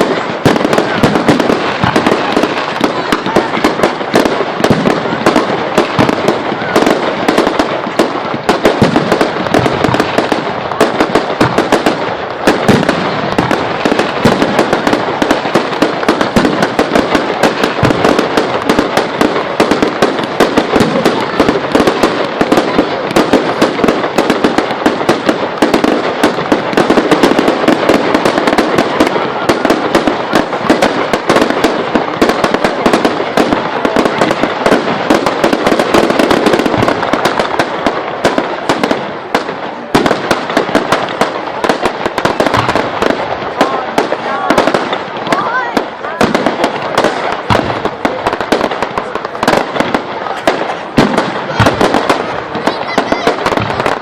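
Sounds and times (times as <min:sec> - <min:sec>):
fireworks bangs and crackles: 0:00.0 - 0:54.0.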